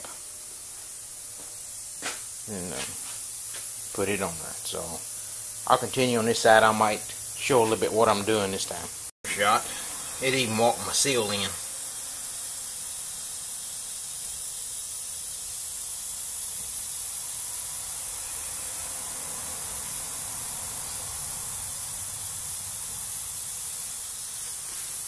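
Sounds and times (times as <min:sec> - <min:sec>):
steady high-pitched hiss: 0:00.0 - 0:25.0.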